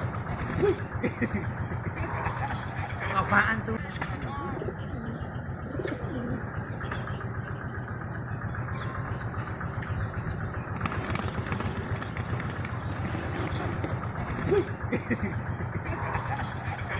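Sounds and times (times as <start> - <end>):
pigeon wings flapping: 0.0 - 0.9, 10.8 - 14.8
steady low rumble: 0.0 - 16.9.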